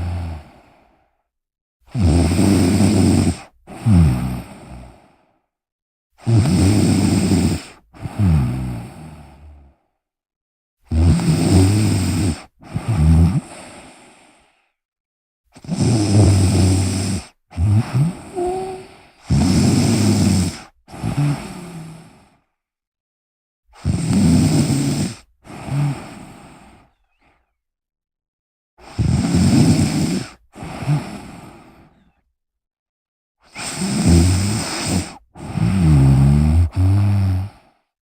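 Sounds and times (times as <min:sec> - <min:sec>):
person snoring: 0:00.0 - 0:00.8, 0:01.9 - 0:05.0, 0:06.2 - 0:09.6, 0:10.9 - 0:14.2, 0:15.6 - 0:22.2, 0:33.6 - 0:37.7.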